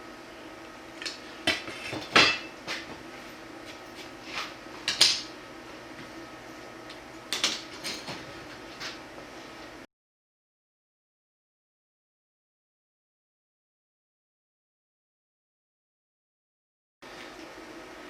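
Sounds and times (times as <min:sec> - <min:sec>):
faint steady hum: 0:00.0 - 0:09.9.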